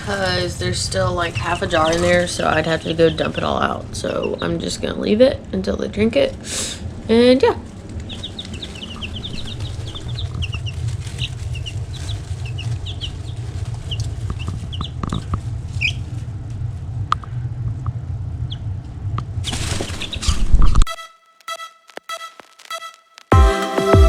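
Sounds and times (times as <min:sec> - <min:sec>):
baby chicks peeping: 0:00.0 - 0:05.2, 0:06.8 - 0:16.2, 0:18.5 - 0:18.7, 0:19.5 - 0:20.8
low rumble: 0:00.0 - 0:20.9
loud rustling: 0:07.6 - 0:16.9.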